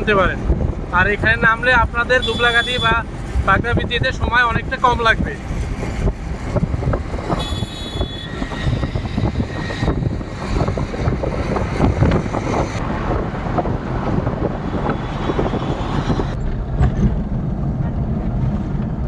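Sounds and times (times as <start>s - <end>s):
vehicle engine and road rumble: 0.0s - 19.0s
wind buffeting microphone: 0.0s - 19.0s
knocks and rattles: 16.3s - 19.0s.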